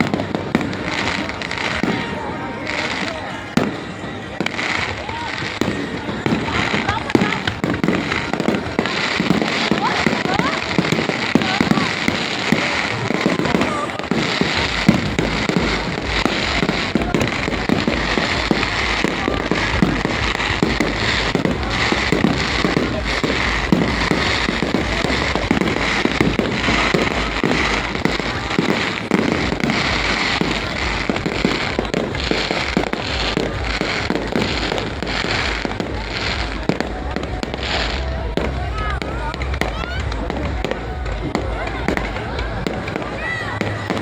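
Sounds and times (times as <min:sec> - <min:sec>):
fireworks bangs and crackling: 0:00.0 - 0:44.0.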